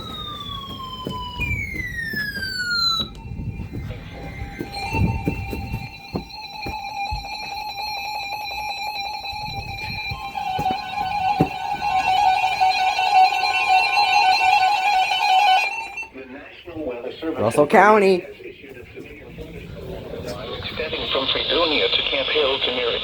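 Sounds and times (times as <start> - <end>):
falling siren-like sweeping tone: 0.0 - 16.2.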